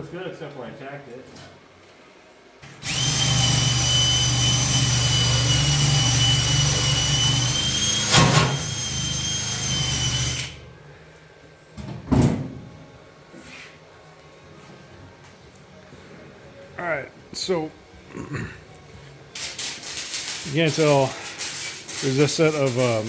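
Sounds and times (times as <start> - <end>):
metalworking tool whining: 2.6 - 10.6, 19.5 - 23.0.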